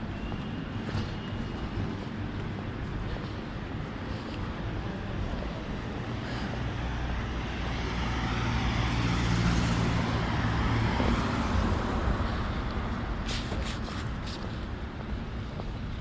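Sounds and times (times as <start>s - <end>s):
road noise: 0.0s - 16.0s
vehicle engine hum passing: 4.9s - 14.8s.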